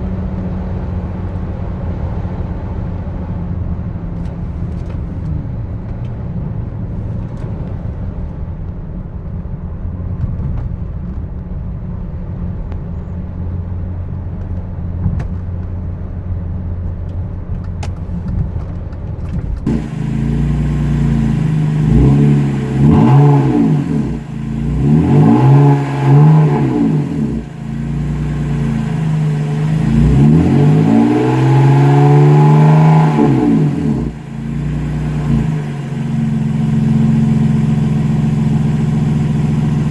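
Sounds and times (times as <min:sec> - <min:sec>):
car engine revving: 0:19.7 - 0:39.9
low exhaust drone: 0:19.7 - 0:39.9.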